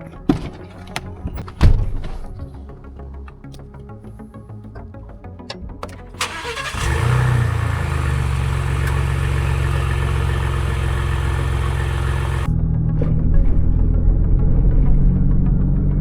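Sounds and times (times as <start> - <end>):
engine starting and idling: 5.5 - 12.5.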